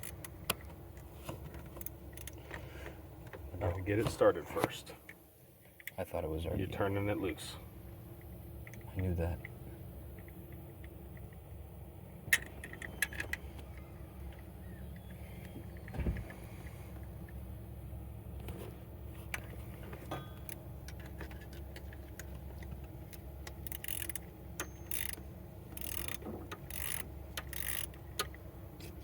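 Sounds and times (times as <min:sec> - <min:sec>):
steady low hum: 0:00.0 - 0:29.0
ratchet wrench clicking: 0:22.2 - 0:28.4
metal clinks: 0:23.7 - 0:25.3.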